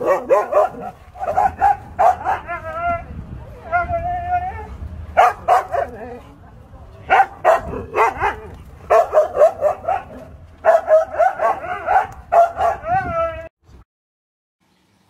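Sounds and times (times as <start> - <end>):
dog barking and yipping: 0.0 - 2.8, 5.2 - 6.2, 7.1 - 13.2.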